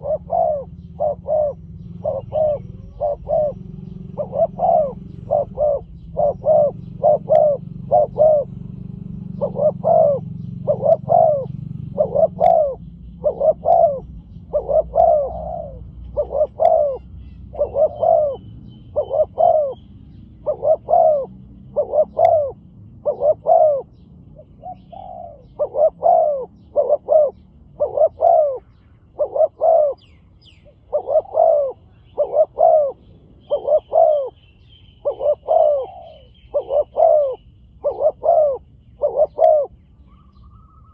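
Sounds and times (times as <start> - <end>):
doves cooing: 0.0 - 40.9.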